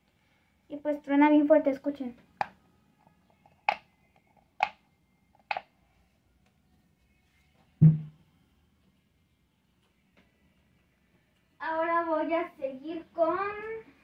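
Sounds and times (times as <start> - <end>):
deep thump: 7.8 - 8.2.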